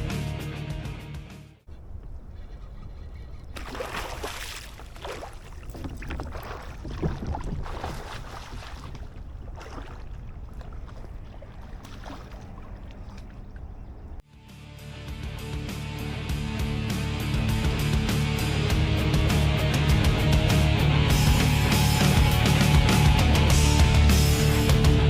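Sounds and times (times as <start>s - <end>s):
low steady rumble: 1.7s - 3.6s
water splashing around kayak: 1.7s - 14.2s.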